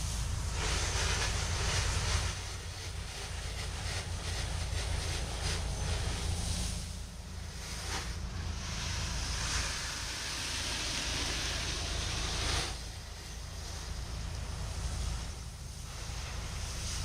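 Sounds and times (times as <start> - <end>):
pressure washer engine hum: 0.0 - 17.0
pressure washer water hiss: 0.0 - 17.0.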